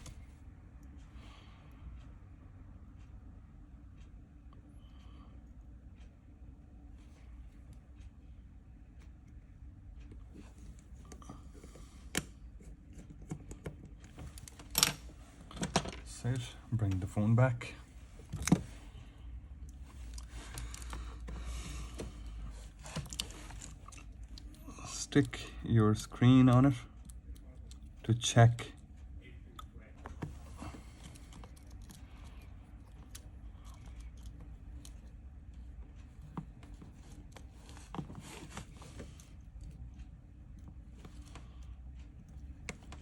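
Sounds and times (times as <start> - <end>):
low steady hum: 0.0 - 43.0
phone handling clicks and taps: 11.1 - 17.2, 18.2 - 18.8
phone parts clicking and tapping: 11.2 - 17.2, 18.2 - 18.8, 19.7 - 25.4, 30.0 - 35.1.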